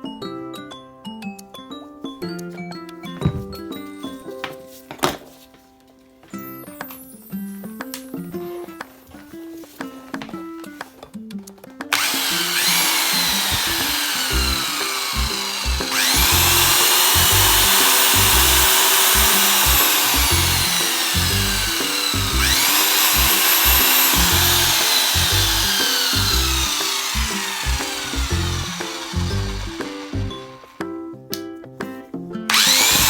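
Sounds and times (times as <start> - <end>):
background music with steady beat: 0.0 - 33.0
power tool motor whining: 11.9 - 30.8, 32.5 - 33.0.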